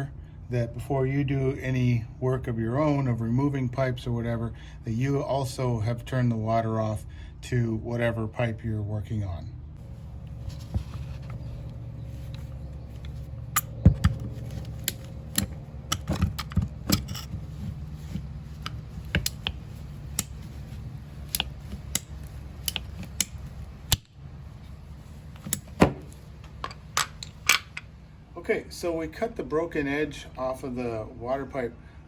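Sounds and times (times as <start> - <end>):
steady low hum: 0.0 - 32.0
tool clicking on plastic pipe: 12.3 - 24.1.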